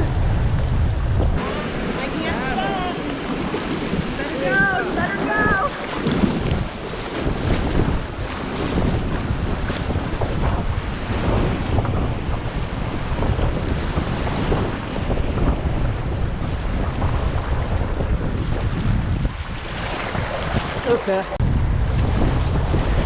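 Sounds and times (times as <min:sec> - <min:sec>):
wind buffeting microphone: 0:00.0 - 0:23.0
whitewater rushing and splashing: 0:01.4 - 0:14.8.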